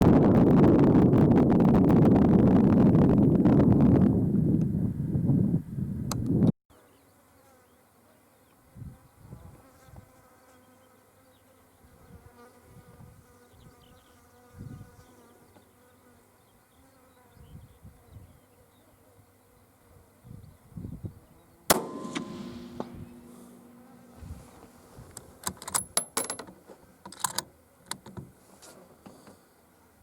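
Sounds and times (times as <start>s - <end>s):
wind buffeting microphone: 0.0s - 6.5s, 22.2s - 25.5s
soft low wind thumps: 21.7s - 25.4s.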